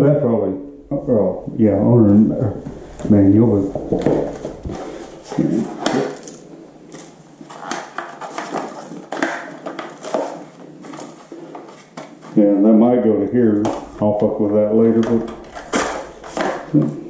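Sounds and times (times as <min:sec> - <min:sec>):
packaging and plastic parts rustling: 0:04.0 - 0:12.4.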